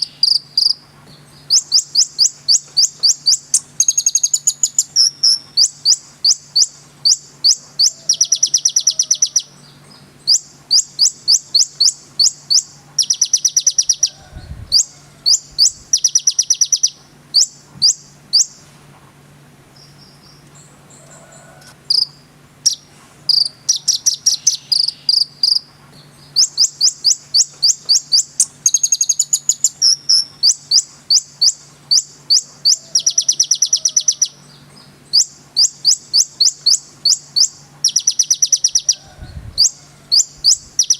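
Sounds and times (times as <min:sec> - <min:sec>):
sunbird singing: 0:00.0 - 0:18.7, 0:19.7 - 0:40.9
faint low hum: 0:00.0 - 0:40.9.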